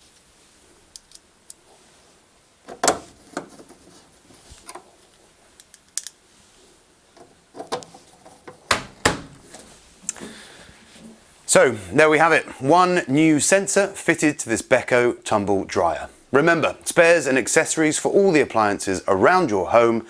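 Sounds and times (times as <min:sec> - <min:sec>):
plastic grille cover handled: 0:02.7 - 0:05.0.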